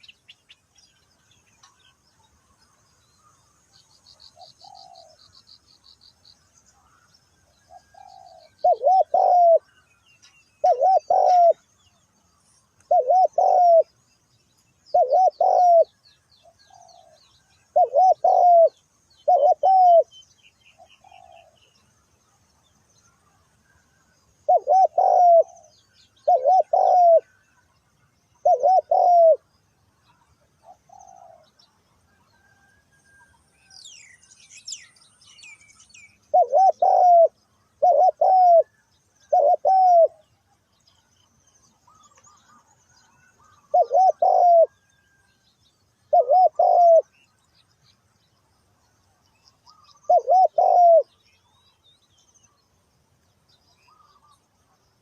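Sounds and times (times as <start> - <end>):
small birds chirping: 0.0 - 55.0
dove cooing: 4.4 - 5.2, 7.7 - 9.7, 10.6 - 11.7, 12.8 - 14.0, 14.9 - 20.1, 20.8 - 21.6, 24.5 - 27.4, 28.4 - 29.5, 30.6 - 31.5, 36.2 - 40.3, 43.4 - 44.8, 46.1 - 47.1, 49.6 - 51.2.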